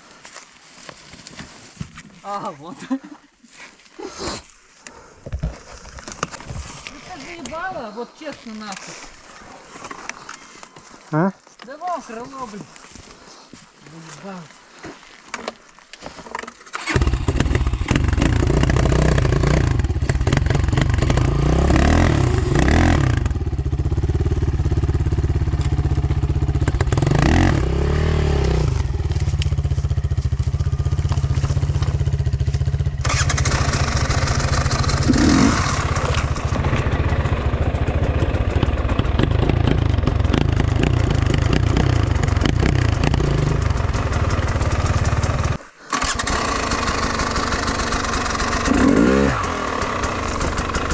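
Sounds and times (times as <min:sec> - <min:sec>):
motorcycle engine revving: 0:16.8 - 0:50.9.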